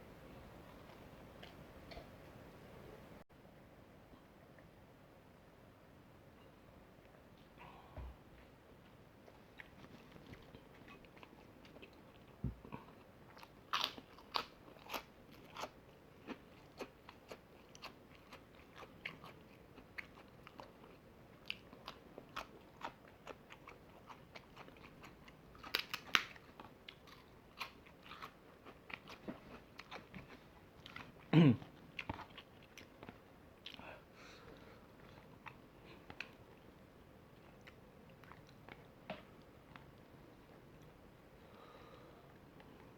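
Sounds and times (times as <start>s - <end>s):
crunching and chewing fried chicken: 9.4s - 40.9s.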